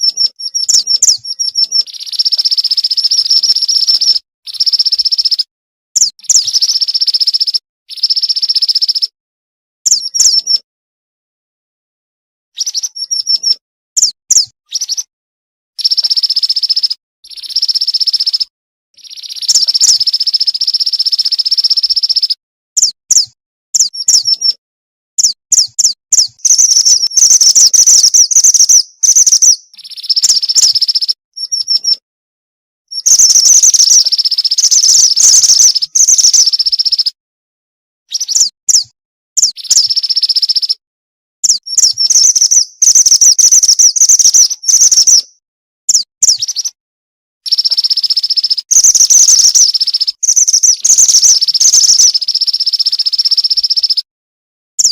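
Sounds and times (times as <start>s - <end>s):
bird buzzy trills: 0.0s - 9.1s, 15.8s - 22.9s, 23.8s - 24.6s, 25.2s - 32.0s, 32.9s - 37.2s, 39.4s - 40.8s, 41.4s - 45.2s, 47.5s - 54.0s
bird sharp chirps: 0.0s - 9.1s, 9.9s - 10.6s, 12.6s - 15.1s, 15.8s - 24.6s, 25.2s - 32.0s, 32.9s - 37.2s, 38.1s - 40.8s, 41.4s - 46.8s, 47.4s - 54.1s.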